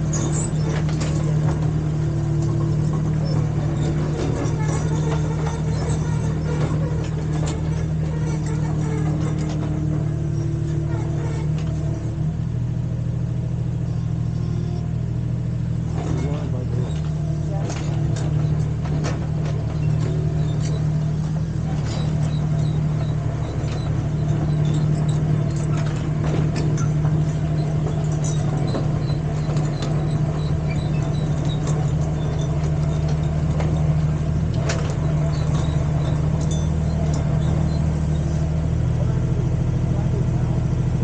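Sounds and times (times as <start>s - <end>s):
mini excavator engine running: 0.0s - 41.0s
light clicks and clanks: 15.9s - 39.1s.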